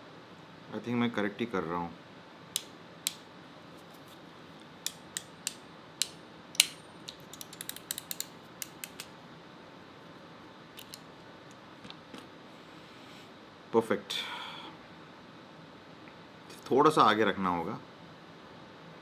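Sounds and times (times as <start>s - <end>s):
crimping tool clicks: 2.6s - 3.2s, 4.8s - 9.1s, 10.8s - 11.0s.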